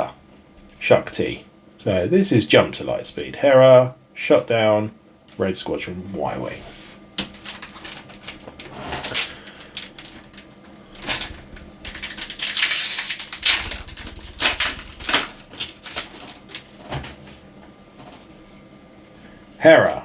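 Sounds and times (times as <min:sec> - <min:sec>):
cards being handled: 0:07.2 - 0:17.4
foil pack crinkling and tearing: 0:07.2 - 0:17.4.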